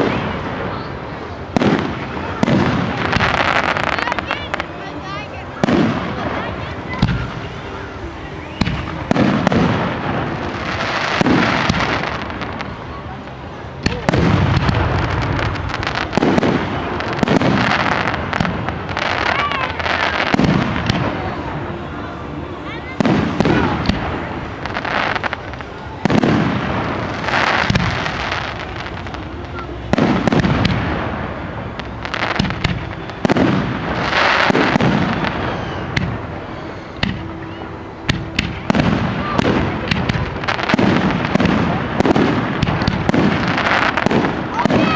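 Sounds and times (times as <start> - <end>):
rumbling echo: 0.0 - 44.9
aerial fireworks bangs: 8.5 - 12.7, 26.0 - 28.6, 29.5 - 36.4, 37.0 - 44.9.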